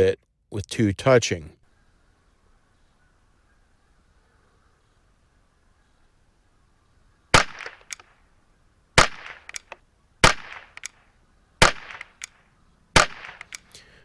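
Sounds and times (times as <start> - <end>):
rifle shots: 7.3 - 8.1, 9.0 - 11.0, 11.6 - 12.4, 13.0 - 13.6
faint clicks: 7.6 - 8.2, 9.3 - 9.8, 10.5 - 11.1, 11.9 - 12.5, 13.2 - 13.9.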